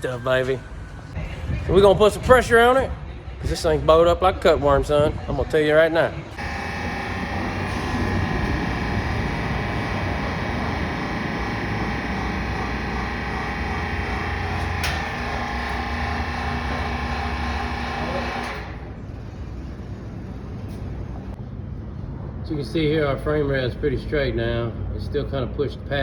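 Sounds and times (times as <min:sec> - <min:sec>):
hydraulic pump running: 0:06.4 - 0:21.4.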